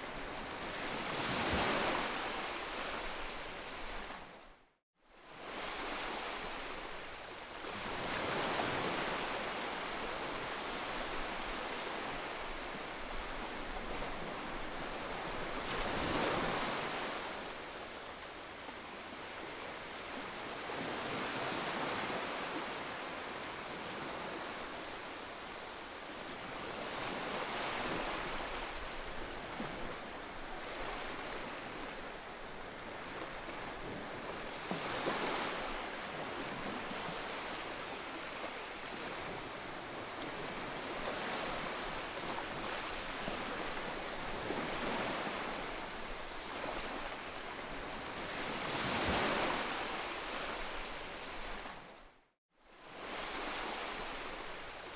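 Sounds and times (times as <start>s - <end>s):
ocean waves breaking on shore: 0.0s - 4.5s, 5.2s - 52.1s, 52.7s - 54.9s.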